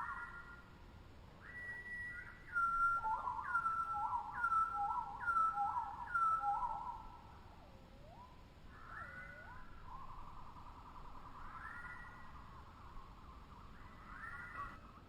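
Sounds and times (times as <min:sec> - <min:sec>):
tropical birds whistling: 0:13.5 - 0:14.8.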